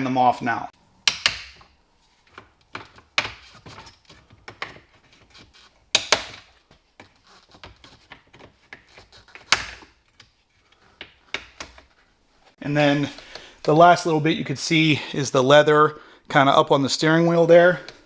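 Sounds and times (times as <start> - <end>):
plastic clips snapping loose: 1.1 - 1.7, 5.9 - 6.5.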